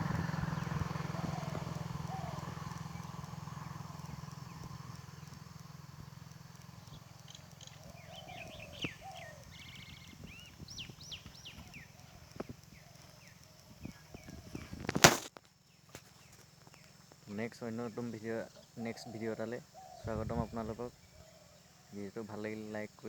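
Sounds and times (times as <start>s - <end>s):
low engine hum: 0.0s - 14.9s
lower bird calls: 0.0s - 23.0s
small birds chirping: 0.0s - 23.0s.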